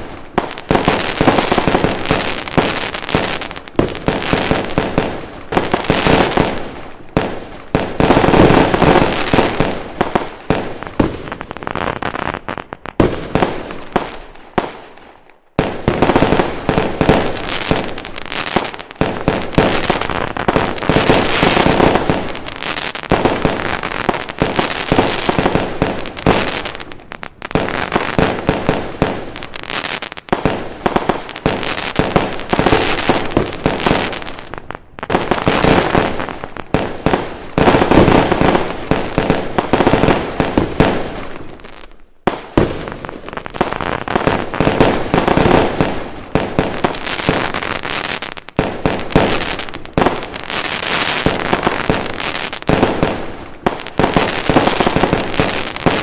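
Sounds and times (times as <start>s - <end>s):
fireworks bangs and crackling: 0.0s - 56.0s.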